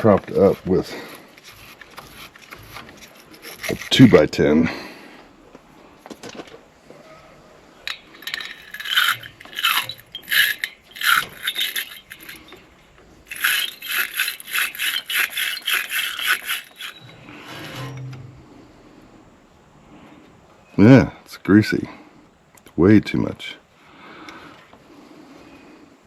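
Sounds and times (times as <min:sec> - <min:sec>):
brush scraping battery terminal: 0:00.0 - 0:04.4, 0:07.9 - 0:12.6, 0:13.3 - 0:17.8.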